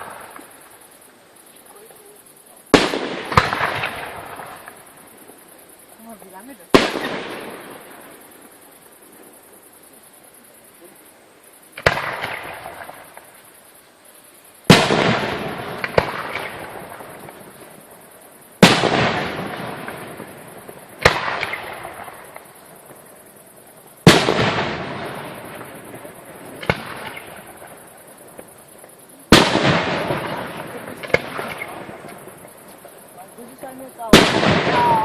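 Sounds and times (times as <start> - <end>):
smaller firework bang: 2.7 - 4.8, 11.8 - 13.3, 14.7 - 17.4, 18.6 - 22.5, 24.0 - 27.8, 29.3 - 32.6, 34.1 - 35.0.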